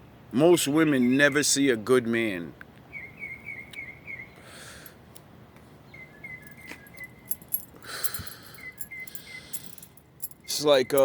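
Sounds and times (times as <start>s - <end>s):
bird chirping: 2.8s - 4.5s, 5.8s - 11.0s
faint clicking and jingling: 6.4s - 11.0s.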